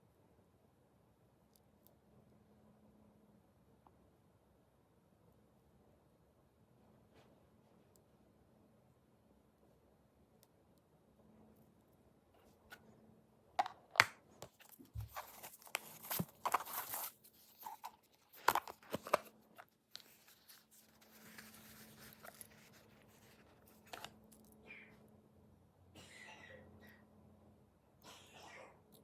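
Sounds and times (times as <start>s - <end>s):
paper rustling and tearing: 14.5s - 24.1s.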